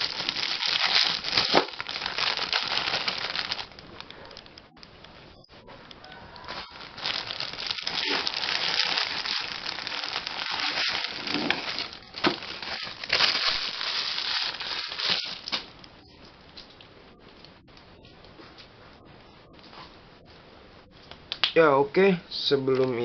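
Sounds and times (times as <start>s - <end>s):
packaging crinkling and rustling: 0.0s - 4.6s, 6.4s - 15.8s.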